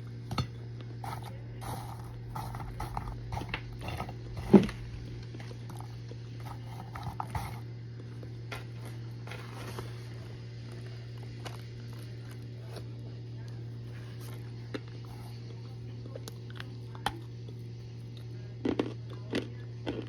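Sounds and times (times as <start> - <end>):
steady low hum: 0.0 - 20.0
crisp crunching crackles: 1.0 - 12.9.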